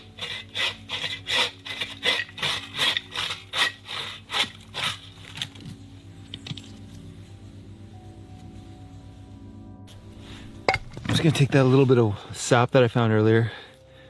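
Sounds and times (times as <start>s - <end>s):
bark being scraped: 0.0s - 5.6s.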